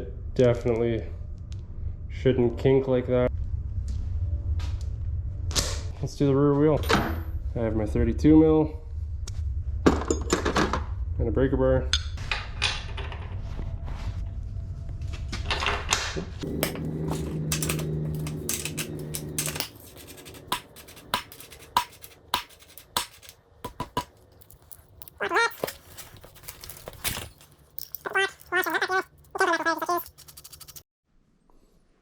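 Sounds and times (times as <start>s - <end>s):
metallic tool clicks and knocks: 16.4s - 30.8s.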